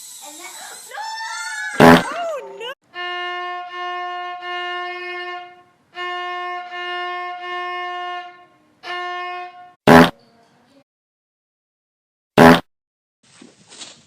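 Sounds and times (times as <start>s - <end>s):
violin bowing single note: 2.9s - 9.8s.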